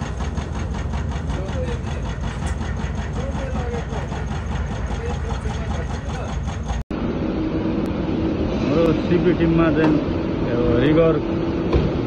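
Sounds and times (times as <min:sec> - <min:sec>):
heavy machinery engine pulsing: 0:00.0 - 0:12.0.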